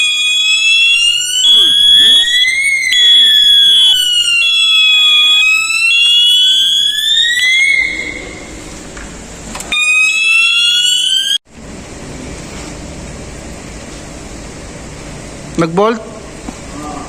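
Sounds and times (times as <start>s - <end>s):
high alarm beep: 0.0s - 8.6s, 9.7s - 11.4s
wailing fire alarm sweep: 0.0s - 11.5s.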